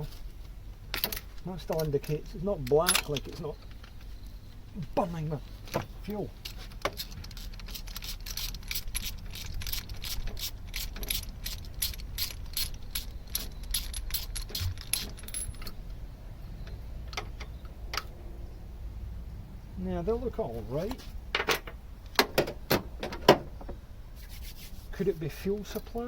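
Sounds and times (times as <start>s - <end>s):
socket ratchet clicking: 6.8s - 15.8s.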